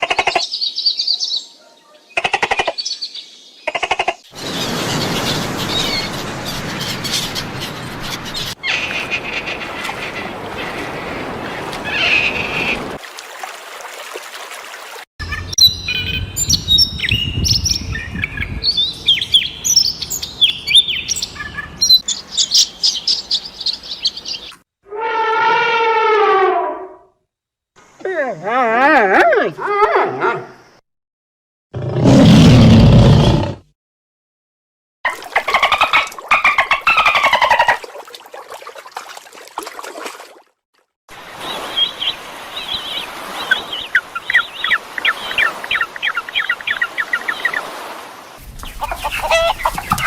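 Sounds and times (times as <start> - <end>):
birds chirping: 4.3 - 13.0, 15.2 - 24.6, 41.3 - 47.8, 48.5 - 50.0.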